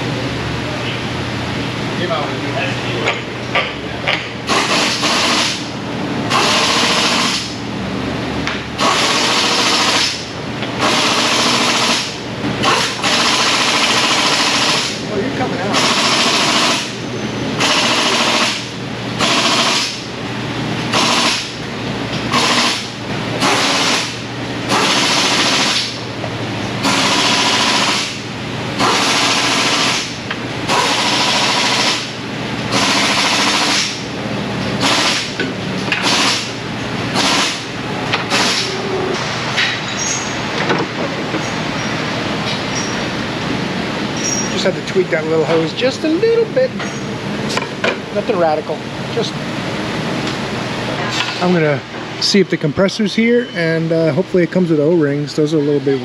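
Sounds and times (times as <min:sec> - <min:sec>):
steady low hum: 0:00.0 - 0:56.0
rattling air tool bursts: 0:04.5 - 0:07.6, 0:08.8 - 0:15.0, 0:15.7 - 0:17.0, 0:17.6 - 0:20.1, 0:20.9 - 0:21.6, 0:22.2 - 0:26.0, 0:26.8 - 0:28.2, 0:28.8 - 0:34.1, 0:34.8 - 0:40.4.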